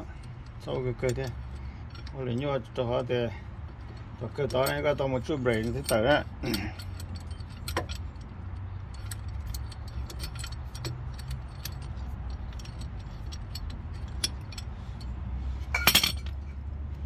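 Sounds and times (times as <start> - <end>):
metal tools clicking and clinking: 0.0 - 3.1, 3.7 - 16.5
metal parts clattering: 3.9 - 14.7, 15.6 - 16.4.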